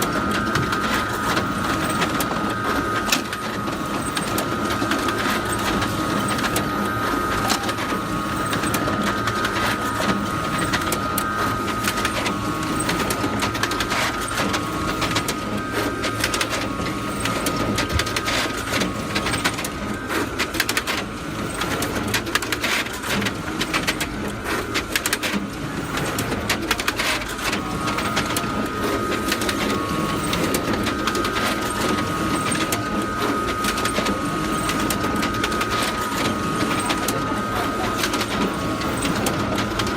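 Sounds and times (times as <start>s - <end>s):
photocopier mechanical clatter: 0.0s - 39.9s
photocopier whine: 0.0s - 39.9s.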